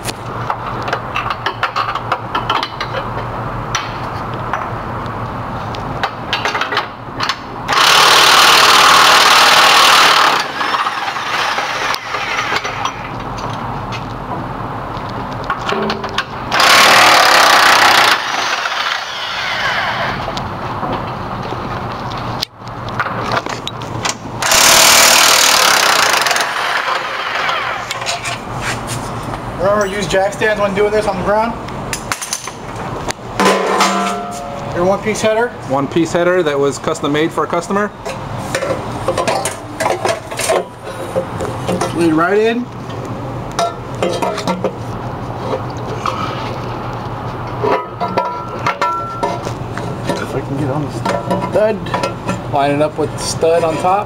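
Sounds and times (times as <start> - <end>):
sharp metal clicks and knocks: 0.5 - 4.7
air tool burst: 16.5 - 20.3, 24.4 - 28.0
tool clicks and clanks: 23.0 - 28.4.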